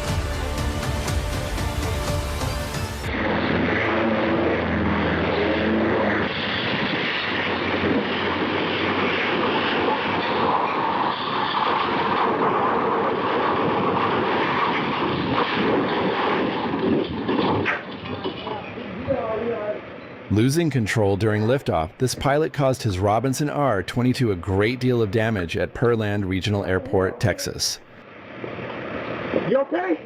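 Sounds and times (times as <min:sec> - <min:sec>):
music: 0:00.0 - 0:03.2
aircraft engine running: 0:00.0 - 0:28.2.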